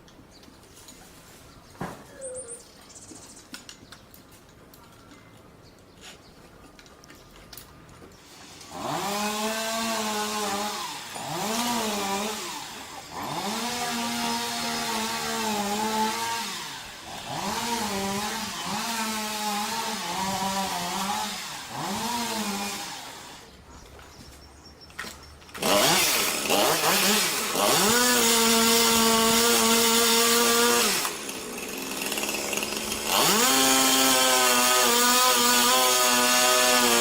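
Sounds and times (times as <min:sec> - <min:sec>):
chainsaw revving: 0:08.2 - 0:23.5, 0:25.5 - 0:37.0.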